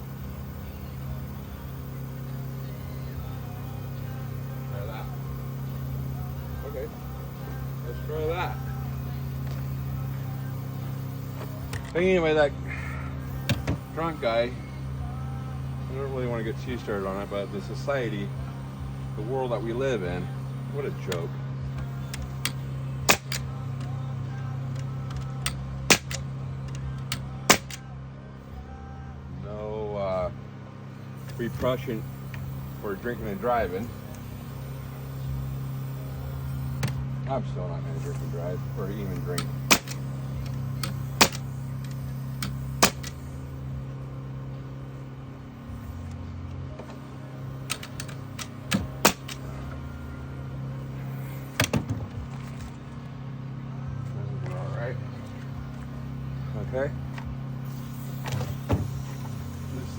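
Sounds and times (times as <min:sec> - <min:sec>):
steady low hum: 0:00.0 - 0:59.9
pneumatic nail gun firing: 0:09.3 - 0:14.5, 0:19.3 - 0:24.0, 0:24.7 - 0:27.9, 0:31.2 - 0:37.2, 0:38.0 - 0:43.6, 0:46.8 - 0:49.7, 0:51.1 - 0:52.3, 0:57.2 - 0:59.9
nail gun firing into wood: 0:23.1 - 0:23.5, 0:25.9 - 0:26.2, 0:27.5 - 0:27.8, 0:39.4 - 0:40.0, 0:40.8 - 0:41.5, 0:42.4 - 0:43.2, 0:47.7 - 0:49.5.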